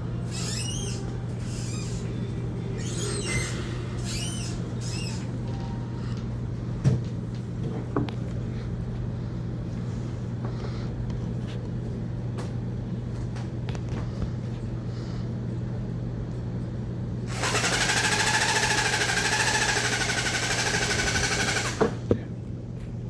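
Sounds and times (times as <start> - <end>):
electric percussion tool buzzing: 17.3 - 22.0.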